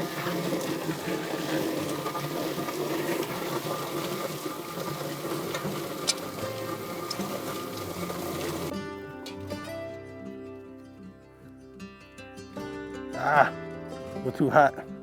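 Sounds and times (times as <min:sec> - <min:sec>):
poultry plucker motor running: 0:00.0 - 0:08.7.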